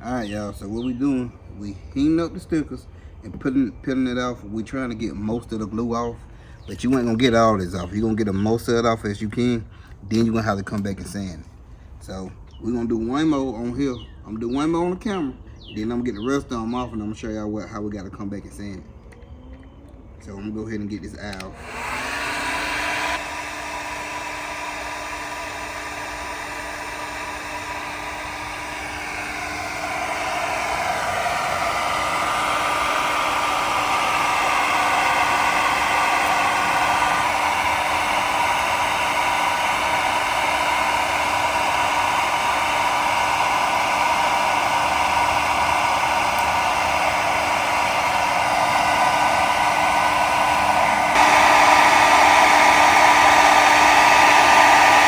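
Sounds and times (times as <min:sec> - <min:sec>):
hair dryer blowing: 0:21.2 - 0:55.0.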